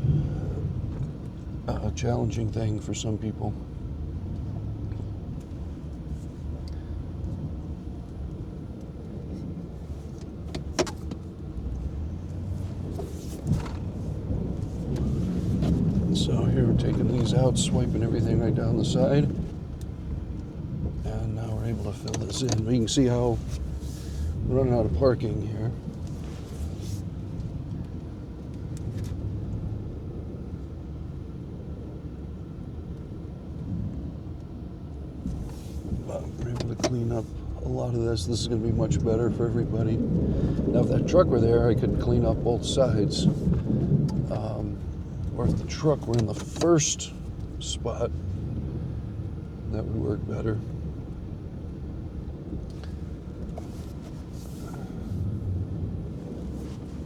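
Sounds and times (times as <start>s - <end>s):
truck engine running: 0.0s - 30.4s, 34.9s - 57.0s.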